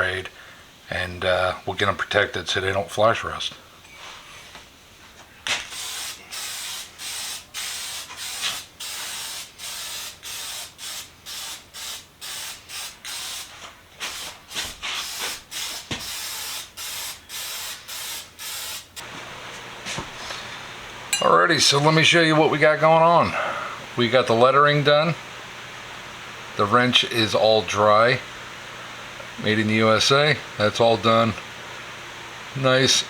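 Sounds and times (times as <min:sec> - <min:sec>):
spray can hissing bursts: 0:05.5 - 0:19.0.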